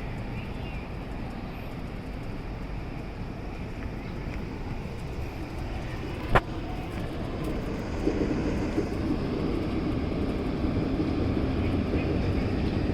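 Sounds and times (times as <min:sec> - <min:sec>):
train rumbling on track: 0:00.0 - 0:12.9
low rising tones: 0:04.4 - 0:12.9.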